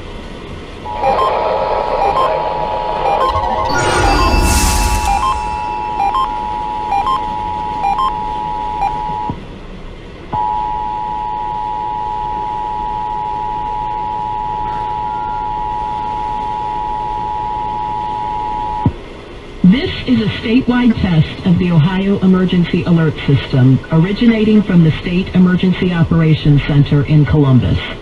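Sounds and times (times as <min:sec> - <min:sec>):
two-tone alert signal on radio: 0:00.9 - 0:09.0
short beeps: 0:00.9 - 0:09.3.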